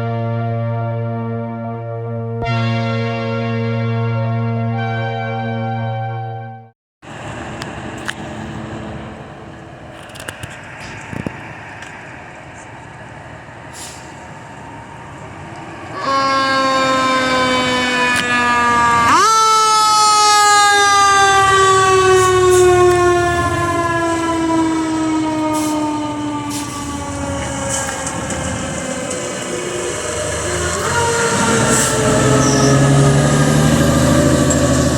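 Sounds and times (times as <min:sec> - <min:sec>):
truck engine rumble: 0:07.0 - 0:34.9.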